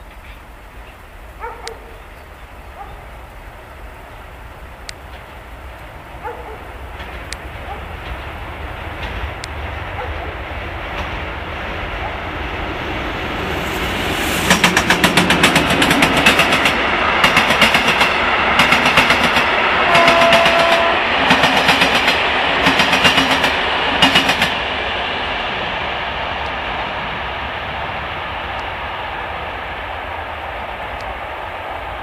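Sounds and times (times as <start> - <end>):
train rumble: 0.0 - 32.0
train wheels clattering over rail joints: 6.8 - 11.8, 14.4 - 24.7.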